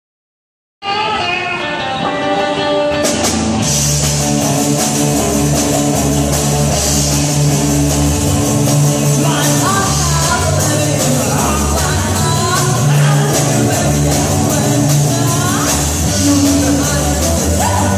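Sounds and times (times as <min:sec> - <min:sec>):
rock band playing: 0:00.8 - 0:17.9
person singing: 0:09.0 - 0:17.9.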